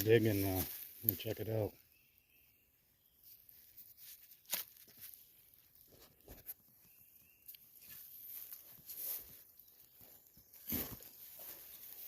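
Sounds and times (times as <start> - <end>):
hand tool digging in soil: 0.0 - 1.3, 3.4 - 6.6, 7.5 - 12.0.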